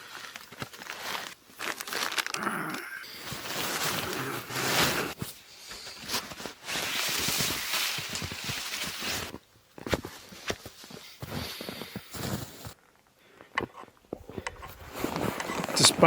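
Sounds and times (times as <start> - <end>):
fabric and gear rustling: 3.2 - 12.9, 14.2 - 16.0.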